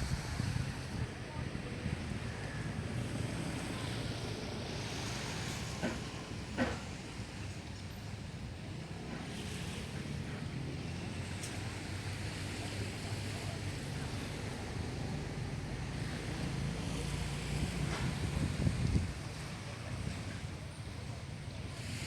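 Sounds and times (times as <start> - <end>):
wind buffeting microphone: 0.0 - 3.6, 17.5 - 21.0
sea waves washing on beach: 0.0 - 22.0.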